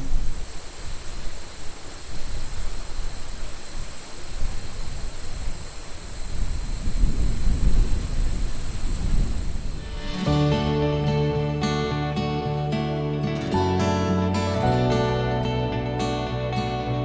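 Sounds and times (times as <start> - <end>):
wind buffeting microphone: 4.4 - 11.6.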